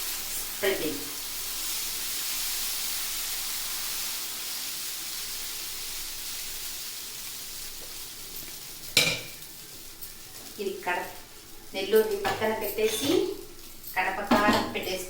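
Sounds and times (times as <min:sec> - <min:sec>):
batter sizzling on hot pan: 0:00.0 - 0:15.0
sharp metal clank: 0:12.3 - 0:13.3.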